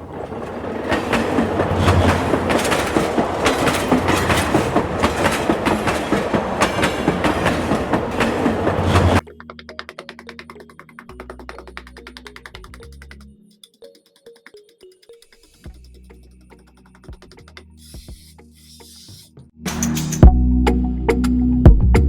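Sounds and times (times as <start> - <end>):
mechanical rattling clatter: 0.0 - 9.2.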